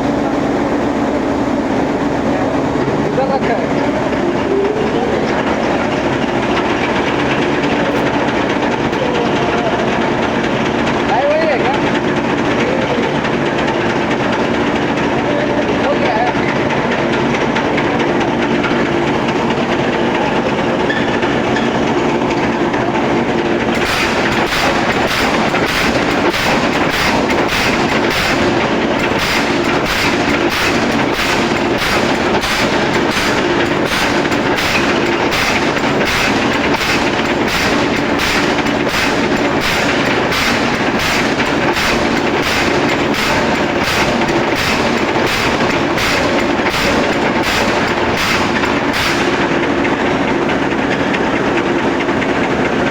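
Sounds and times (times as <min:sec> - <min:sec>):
machinery humming: 0:00.0 - 0:52.9
sharp knocks of press: 0:23.7 - 0:49.6.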